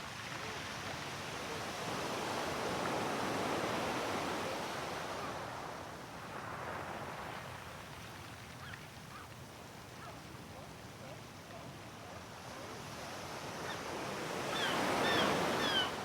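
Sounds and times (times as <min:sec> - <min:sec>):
faint gull calls: 0:14.5 - 0:16.0.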